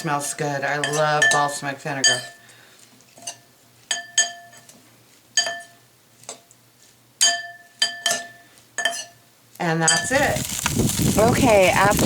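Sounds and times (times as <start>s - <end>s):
utensils clinking against bowl: 0.8s - 2.4s.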